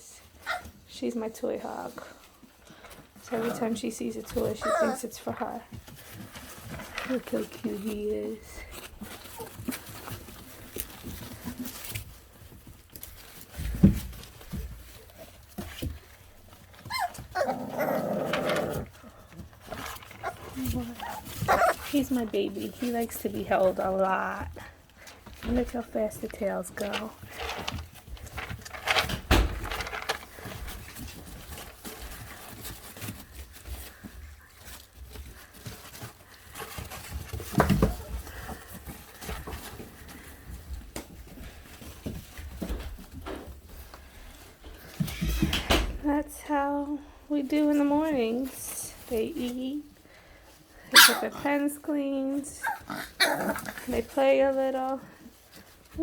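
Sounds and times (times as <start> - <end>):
puppy paws scrabbling on floor: 0.2 - 46.7
soft thumps and scuffling: 2.9 - 17.4, 18.8 - 46.8
puppy whining: 4.5 - 5.1, 16.7 - 19.0, 20.1 - 21.9, 52.6 - 53.9.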